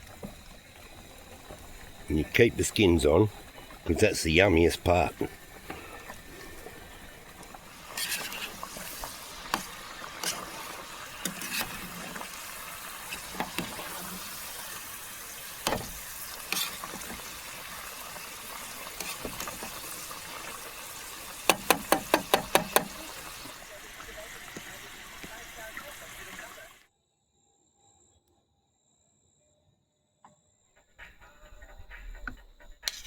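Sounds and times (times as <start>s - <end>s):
knife chopping on board: 21.5s - 23.0s.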